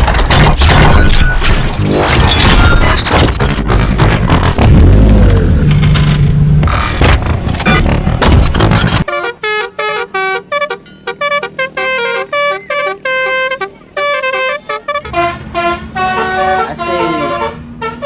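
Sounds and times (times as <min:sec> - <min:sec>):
bus horn playing a melody: 0:09.1 - 0:18.0.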